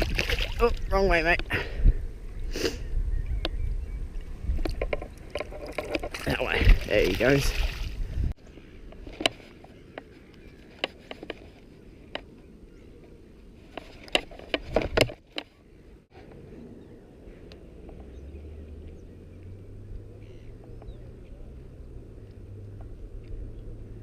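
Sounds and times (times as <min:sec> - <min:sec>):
fishing gear knocks and clicks: 0:04.6 - 0:07.4, 0:09.0 - 0:11.6, 0:13.7 - 0:15.6.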